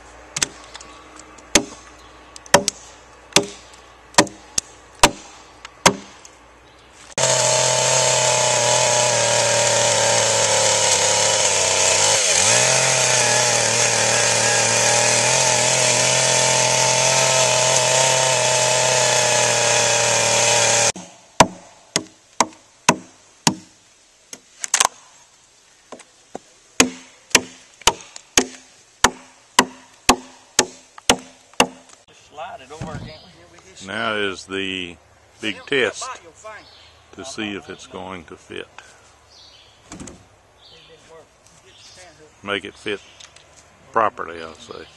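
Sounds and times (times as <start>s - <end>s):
chopping strikes into wood: 1.5s - 1.8s, 2.5s - 3.6s, 4.2s - 6.2s, 7.2s - 23.7s, 26.8s - 31.9s
chainsaw cutting log: 7.2s - 23.7s, 26.8s - 31.9s.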